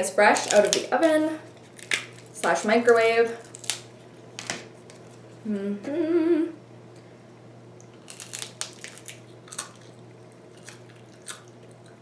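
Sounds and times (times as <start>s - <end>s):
person chewing crunchy food: 1.4s - 2.4s, 7.8s - 12.0s.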